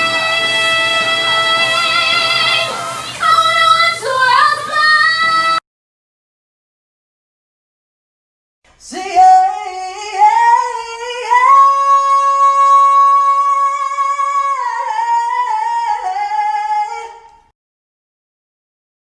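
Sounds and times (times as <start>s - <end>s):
person singing unaccompanied: 0.0s - 5.6s, 8.8s - 17.5s.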